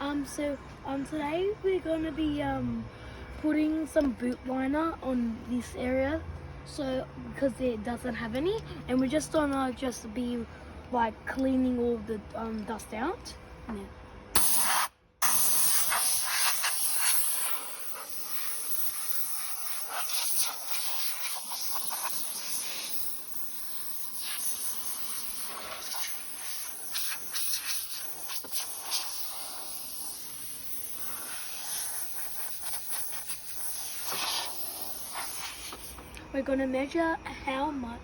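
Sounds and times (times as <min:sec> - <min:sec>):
hissing and scratchy scraping: 0:14.4 - 0:36.2.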